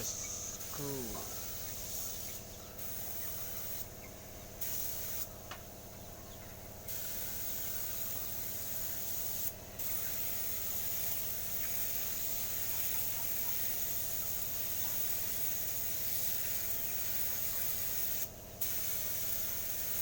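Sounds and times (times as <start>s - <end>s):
spray paint hissing: 0.0s - 3.8s, 4.6s - 5.3s, 6.9s - 20.0s
steady low hum: 0.0s - 8.5s.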